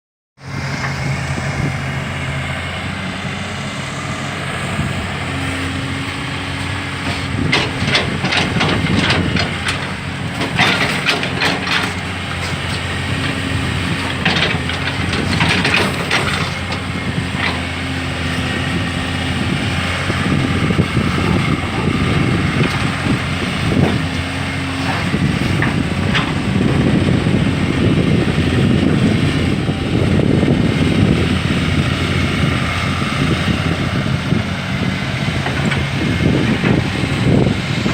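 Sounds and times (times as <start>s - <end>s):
diesel engine running: 0.4s - 37.9s
hydraulic whine: 0.4s - 37.9s
metallic clanks and scrapes: 7.0s - 17.7s.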